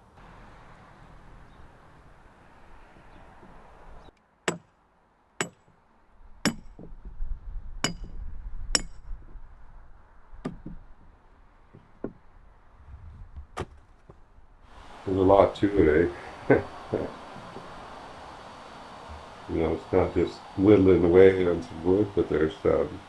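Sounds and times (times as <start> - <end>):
carving tool striking wood: 4.5 - 4.7, 6.4 - 7.0, 8.8 - 9.0, 10.4 - 10.8.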